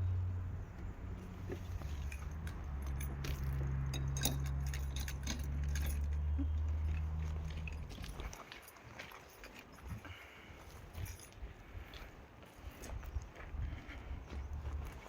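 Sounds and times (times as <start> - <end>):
low mechanical hum: 0.0 - 8.4
light metallic clinks: 1.2 - 11.9.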